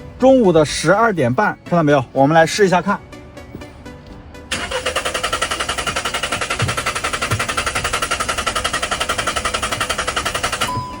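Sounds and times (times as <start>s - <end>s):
car engine cranking without starting: 4.4s - 11.0s.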